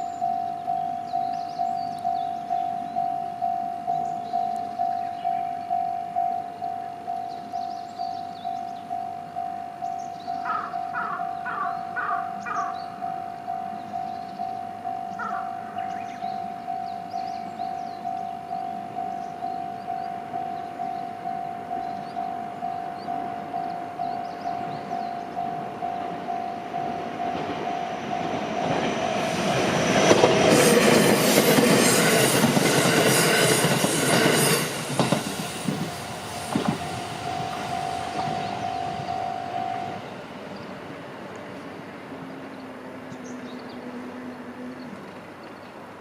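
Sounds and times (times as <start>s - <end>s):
level-crossing alarm ringing: 0.0s - 40.3s
electric train passing: 0.0s - 46.0s
train knocks: 16.7s - 40.4s.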